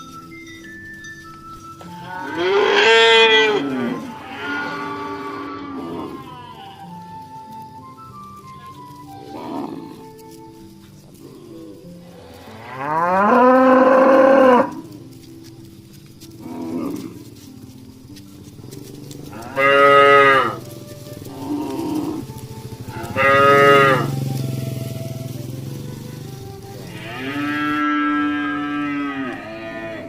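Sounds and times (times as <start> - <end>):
cattle mooing: 2.0 - 6.8, 9.2 - 10.2, 11.2 - 15.0, 19.3 - 20.7, 21.3 - 24.6, 26.7 - 30.0.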